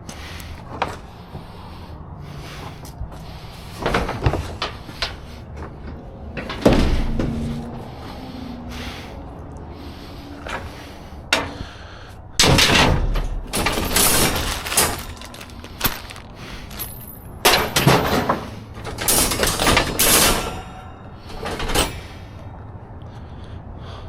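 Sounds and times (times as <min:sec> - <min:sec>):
scrap metal banging and scraping: 0:03.4 - 0:08.9, 0:12.4 - 0:22.2
metal clang ringing: 0:19.1 - 0:21.8.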